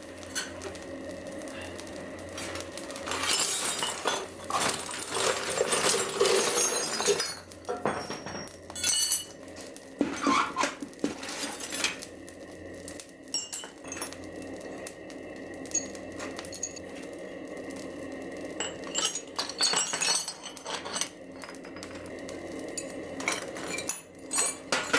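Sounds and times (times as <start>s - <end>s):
scrap metal clinking in a bucket: 0.2s - 0.8s, 2.4s - 12.1s, 13.3s - 14.2s, 15.6s - 16.9s, 18.6s - 22.1s, 22.7s - 24.9s.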